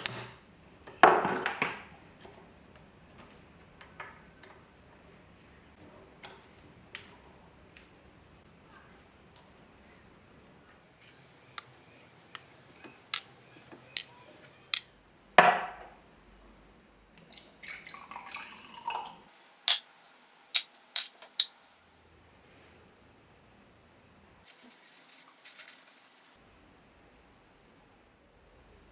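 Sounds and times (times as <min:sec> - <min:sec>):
small metal parts clicking: 0:20.6 - 0:21.5.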